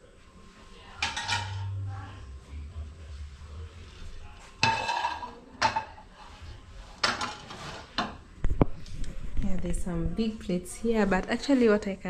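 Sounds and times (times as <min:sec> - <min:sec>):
utensils and dishes clinking: 0:01.0 - 0:01.8, 0:04.6 - 0:06.4, 0:07.0 - 0:08.2.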